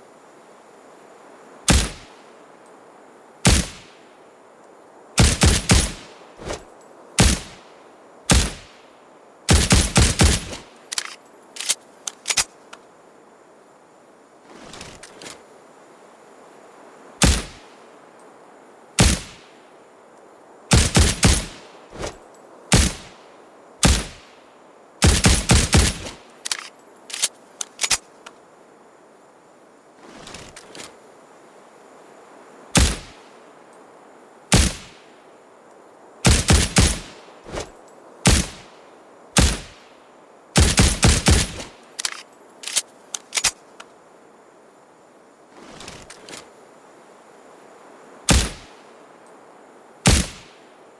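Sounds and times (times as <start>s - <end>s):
suppressed pistol shots: 1.7s - 2.1s, 3.5s - 3.8s, 20.7s - 21.6s, 39.4s - 39.8s, 40.6s - 41.7s, 48.3s - 48.7s, 50.1s - 50.6s.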